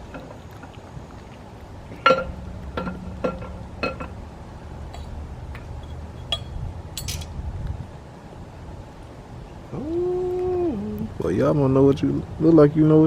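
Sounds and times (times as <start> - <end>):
metal parts clinking: 6.3 - 7.3.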